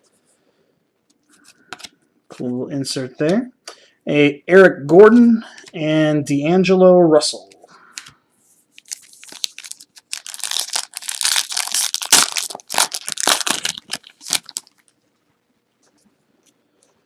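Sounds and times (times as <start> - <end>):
card pack wrapper crinkling and tearing: 8.8 - 15.0.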